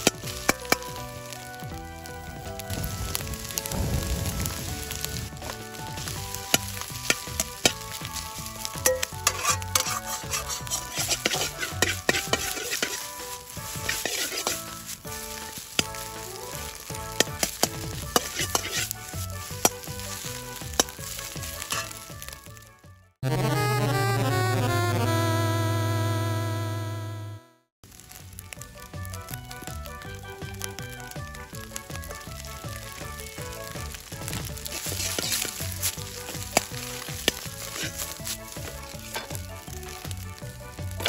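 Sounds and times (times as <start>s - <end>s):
rice sizzling in a wok: 0.0s - 22.7s, 27.8s - 41.0s
utensil scraping a wok: 4.3s - 22.4s, 32.9s - 41.0s.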